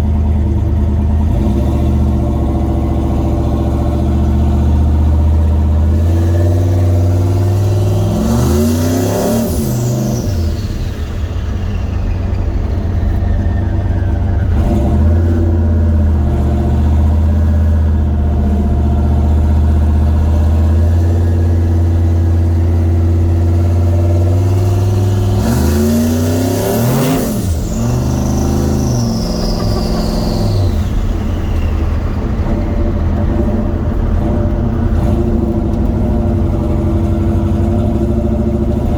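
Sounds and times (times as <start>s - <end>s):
truck engine running: 0.0s - 38.9s
turbo whistle: 25.3s - 32.3s.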